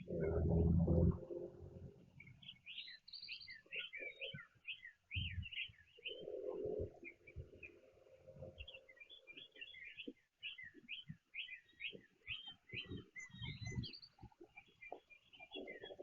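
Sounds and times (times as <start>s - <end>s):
songbirds chirping: 0.0s - 16.0s
soft low thumps: 5.2s - 5.6s.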